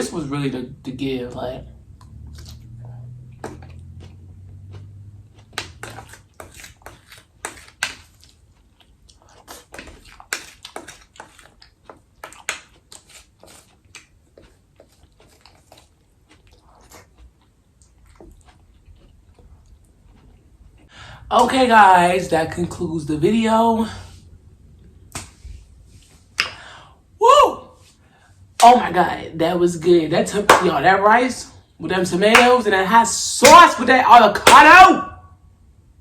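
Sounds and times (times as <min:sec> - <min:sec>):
person chewing food: 0:01.9 - 0:21.3.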